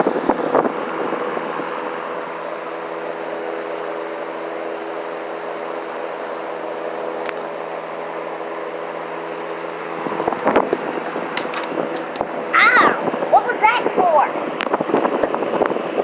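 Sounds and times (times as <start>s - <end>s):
mechanical hum: 0.0s - 16.0s
faint voice-like sounds: 12.5s - 14.5s.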